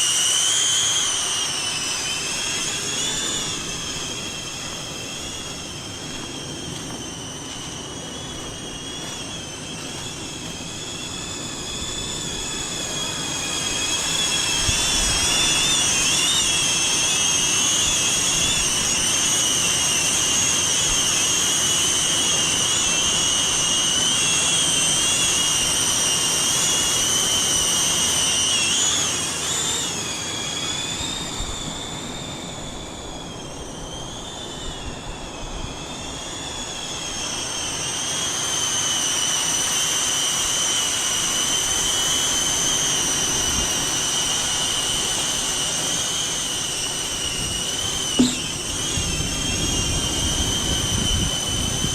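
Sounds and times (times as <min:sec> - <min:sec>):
drone propellers whining: 0:00.0 - 0:51.9.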